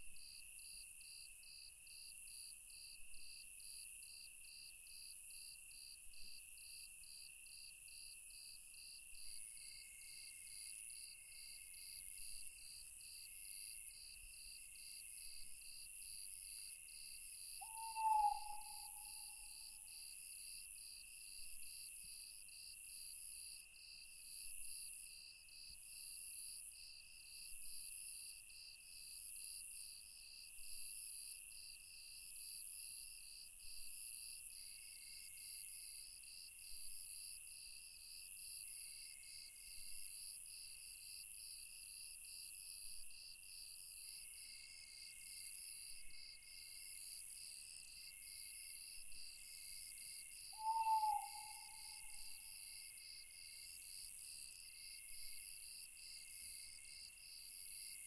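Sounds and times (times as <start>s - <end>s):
crickets trilling: 17.6s - 19.4s, 50.5s - 52.4s
owl hoot: 17.6s - 19.6s, 50.5s - 52.4s.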